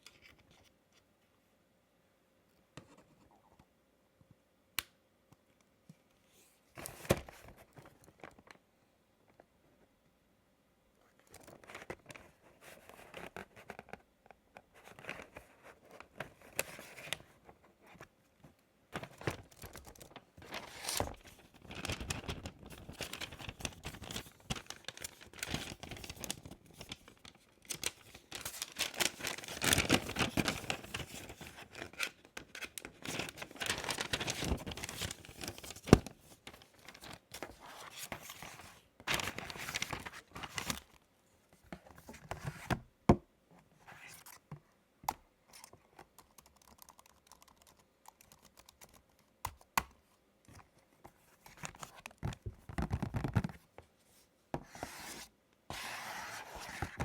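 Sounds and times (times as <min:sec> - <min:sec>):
packaging rustling and tearing: 0:19.0 - 0:41.0.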